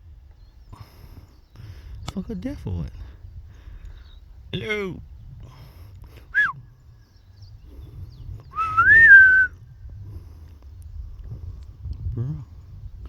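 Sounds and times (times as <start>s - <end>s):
person whistling: 6.4s - 6.6s, 8.6s - 9.5s.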